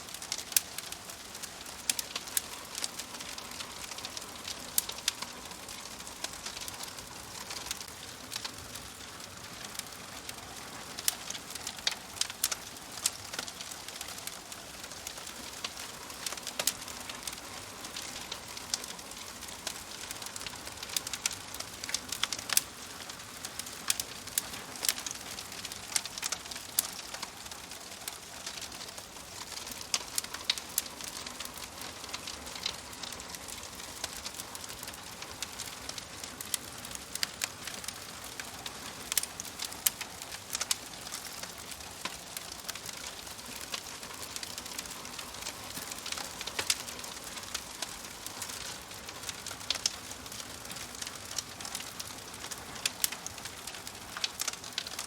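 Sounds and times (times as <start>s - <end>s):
fire hiss: 0.0s - 55.0s
fire pops and snaps: 0.0s - 55.0s
wood fire crackling: 0.0s - 55.0s.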